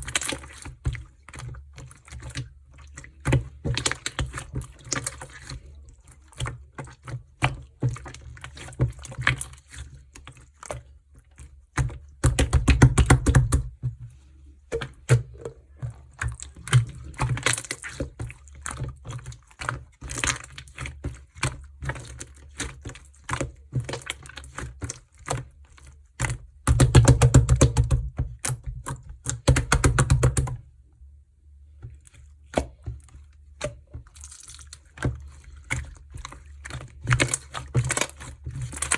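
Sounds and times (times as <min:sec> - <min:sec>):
rapid popping of slime: 0:11.8 - 0:13.9, 0:26.2 - 0:30.6
slime squished by hand: 0:14.6 - 0:30.6, 0:31.9 - 0:38.9.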